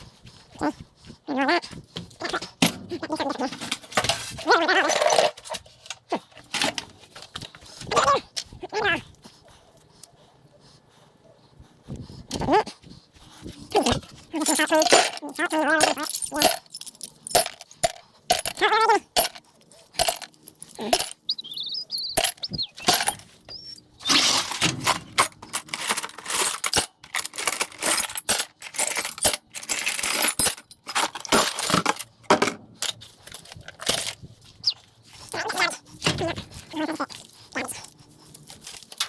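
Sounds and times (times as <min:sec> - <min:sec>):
scrap metal clinking into bucket: 0:14.4 - 0:18.6, 0:24.0 - 0:32.1.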